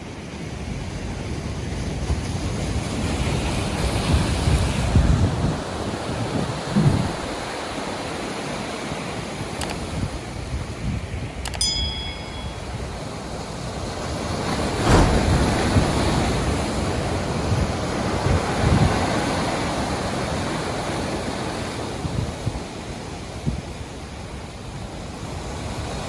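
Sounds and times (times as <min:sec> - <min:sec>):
ocean surf breaking: 0:02.6 - 0:10.6, 0:12.0 - 0:22.1
wind buffeting microphone: 0:02.7 - 0:08.1
ringing click: 0:11.4 - 0:13.1.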